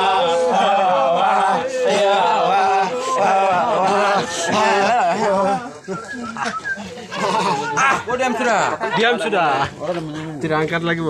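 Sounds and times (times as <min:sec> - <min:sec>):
group chanting a song: 0:00.0 - 0:05.8.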